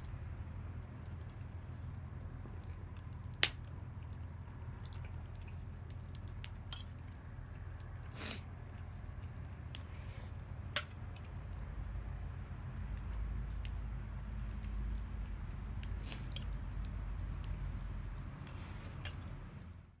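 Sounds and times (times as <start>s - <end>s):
low outdoor rumble: 0.0s - 20.0s.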